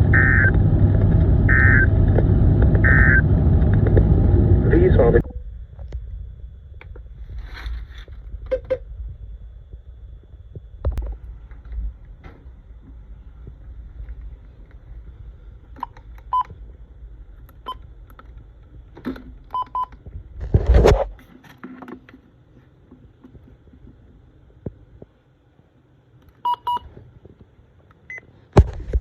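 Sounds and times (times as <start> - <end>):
loud burst of noise: 0.0 - 7.9
low rumble: 0.0 - 21.2
short electronic beeps: 0.1 - 0.5, 1.5 - 1.9, 2.8 - 3.2, 26.4 - 26.8.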